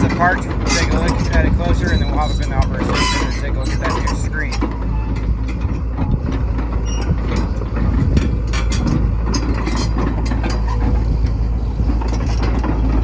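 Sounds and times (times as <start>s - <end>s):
excavator diesel engine rumbling: 0.0s - 13.0s
machine clanks and rattles: 0.0s - 13.0s.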